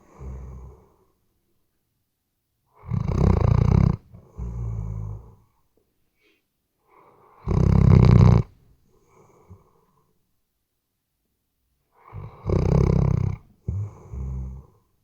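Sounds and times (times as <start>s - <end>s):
dog snoring: 0.0s - 1.0s, 2.7s - 5.5s, 7.0s - 8.6s, 12.0s - 14.9s.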